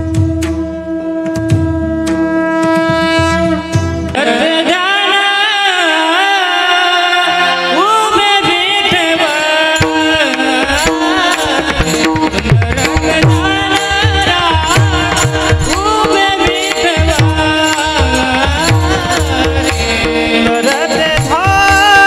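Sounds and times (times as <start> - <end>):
person singing sliding melody: 0.9 - 22.0
sharp percussive strikes: 8.5 - 22.0.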